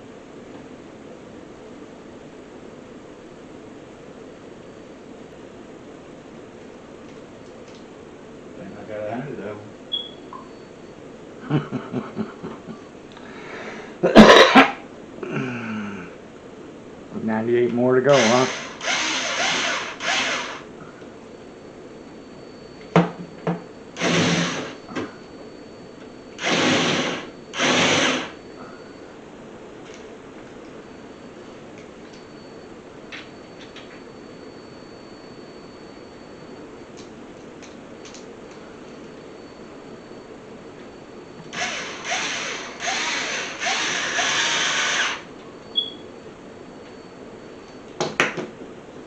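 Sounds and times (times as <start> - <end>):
power drill driving screws: 18.2 - 20.6, 24.0 - 24.8, 26.4 - 28.4, 41.5 - 45.2.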